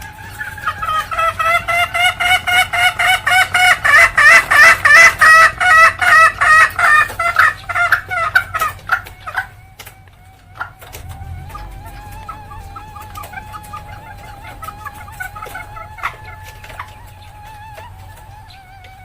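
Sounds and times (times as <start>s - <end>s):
junglefowl hen cackling: 0.0s - 19.0s.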